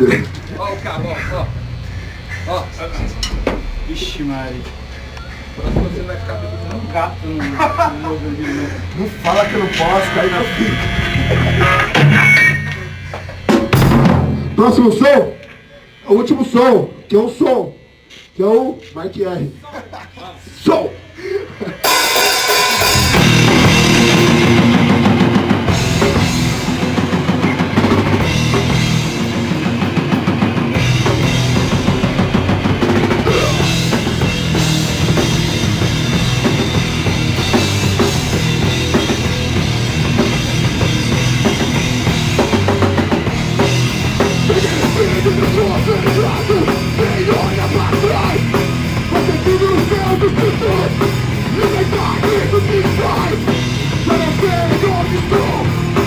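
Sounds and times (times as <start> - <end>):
driven drum kit: 0.0 - 8.3, 8.9 - 16.9, 21.6 - 56.0
live rock band playing: 9.1 - 15.0, 21.8 - 56.0.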